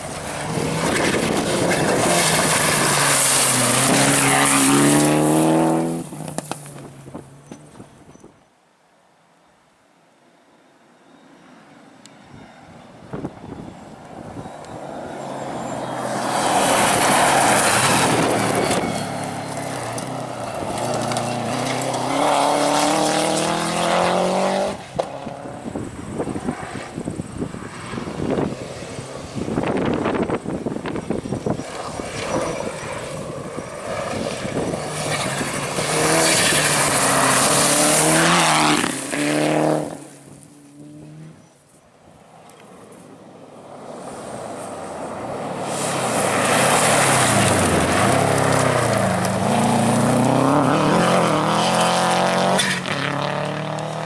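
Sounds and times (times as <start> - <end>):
tyres and gravel hissing: 0.0 - 5.3, 33.9 - 39.2, 43.9 - 51.9
rally car engine passing: 0.0 - 7.4, 13.9 - 41.5, 42.3 - 54.0.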